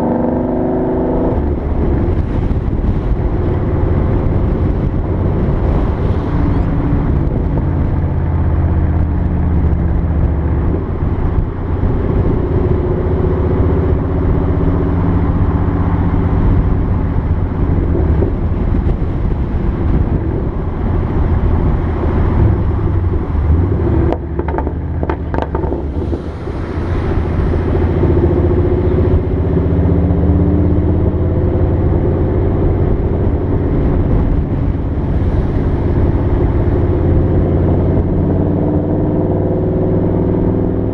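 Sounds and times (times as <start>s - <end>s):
car exhaust revving: 0.0s - 40.9s
exhaust pops and crackles: 21.1s - 26.2s.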